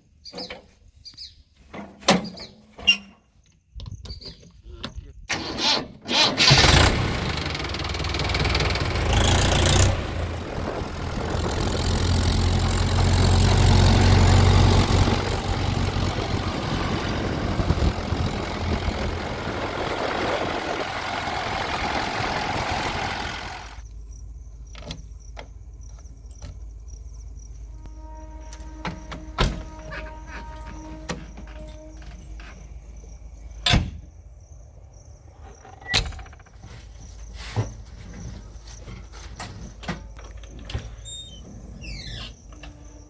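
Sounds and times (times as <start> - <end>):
diesel engine droning: 6.2 - 23.9, 27.5 - 33.6.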